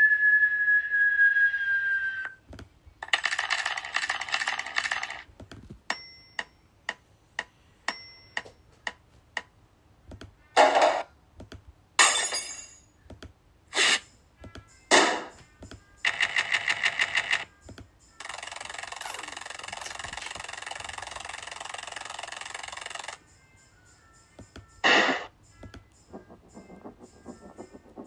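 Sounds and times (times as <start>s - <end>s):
whistle tone: 0.0s - 2.4s
small ringing tone: 5.9s - 6.6s, 15.8s - 24.8s.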